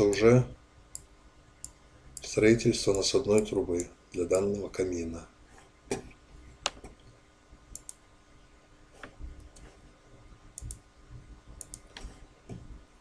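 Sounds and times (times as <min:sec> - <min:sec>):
computer mouse clicks: 0:07.7 - 0:08.0, 0:09.0 - 0:09.8, 0:10.6 - 0:10.8, 0:11.6 - 0:12.6.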